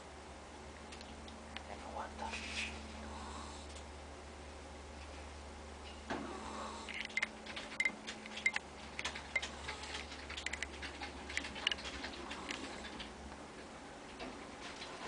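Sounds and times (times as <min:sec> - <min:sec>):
ferret snoring: 0:06.2 - 0:06.9.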